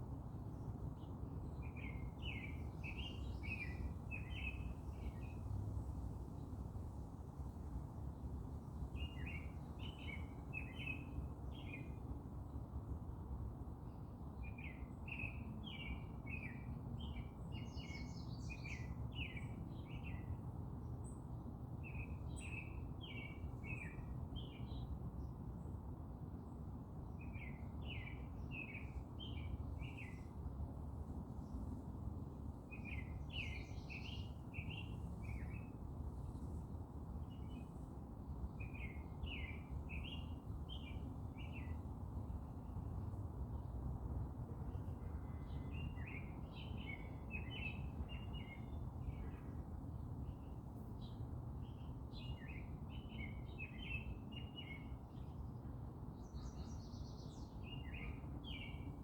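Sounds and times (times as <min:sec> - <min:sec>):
songbird chirping: 0:32.7 - 0:36.6.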